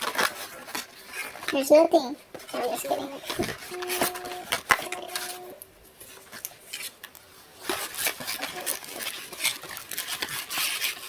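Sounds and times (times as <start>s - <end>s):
camera zoom motor whine: 3.6s - 5.6s.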